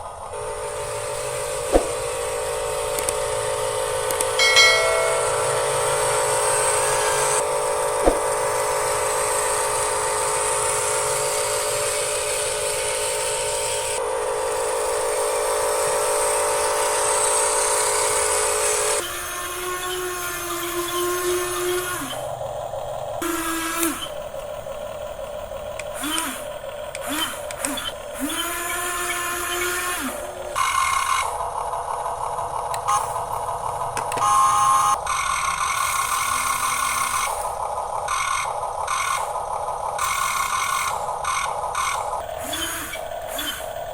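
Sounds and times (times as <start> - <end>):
electric motors whining: 0.0 - 43.9
sharp clicks: 25.7 - 28.0.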